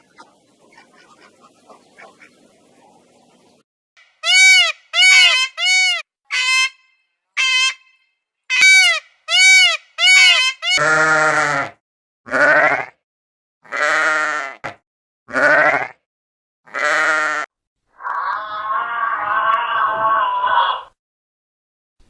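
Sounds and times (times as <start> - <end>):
long quavering bleats: 10.8 - 13.0, 13.6 - 16.0, 16.7 - 20.9.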